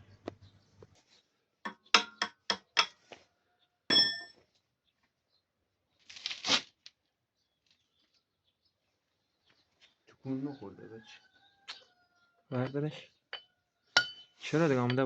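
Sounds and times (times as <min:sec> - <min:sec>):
bright metallic ding: 0:03.9 - 0:04.3.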